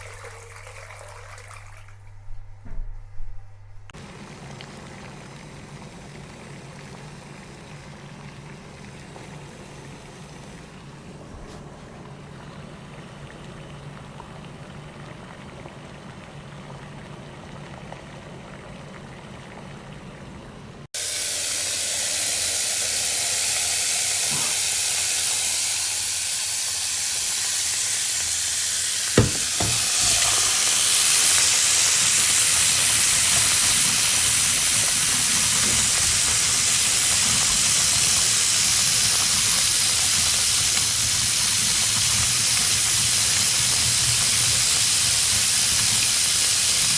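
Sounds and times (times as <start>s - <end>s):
water boiling in a pot: 0.0s - 2.8s, 3.9s - 46.9s
tap running into a sink: 0.0s - 3.9s, 22.2s - 46.9s
sharp knock: 29.2s - 30.2s.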